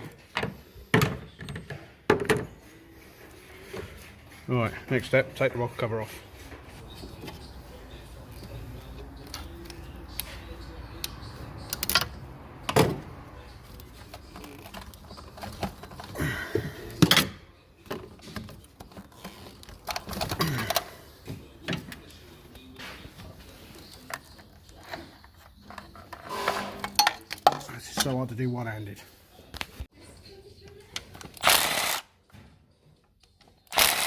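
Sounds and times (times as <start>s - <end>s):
hand tools and engine parts clunking: 0.0s - 28.4s.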